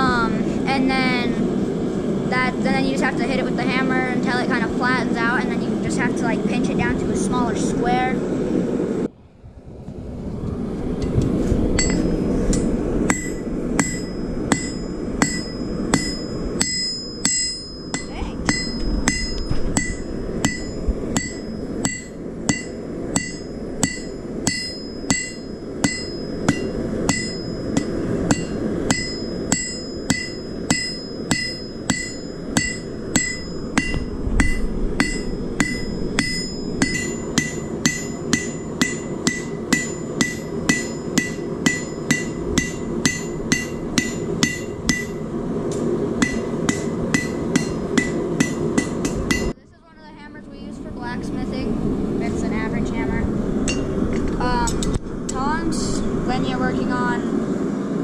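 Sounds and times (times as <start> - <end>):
low rushing sound: 0.0 - 58.0
hammer ringing on anvil: 13.1 - 45.2, 46.2 - 49.5.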